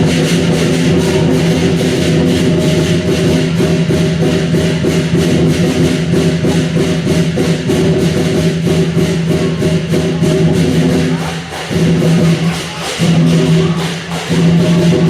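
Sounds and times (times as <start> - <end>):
fast percussion strokes: 0.0 - 15.0.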